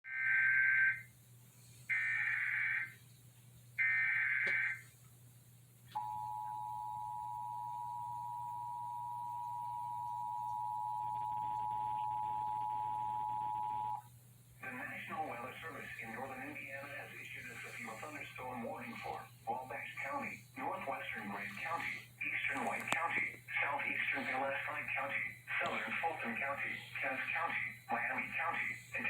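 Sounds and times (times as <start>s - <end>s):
digital data bursts: 14.7s - 29.0s.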